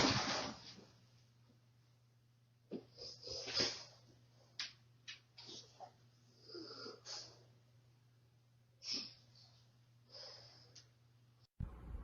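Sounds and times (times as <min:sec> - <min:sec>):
faint steady hum: 0:00.6 - 0:12.0
low rumbling noise: 0:11.6 - 0:12.0.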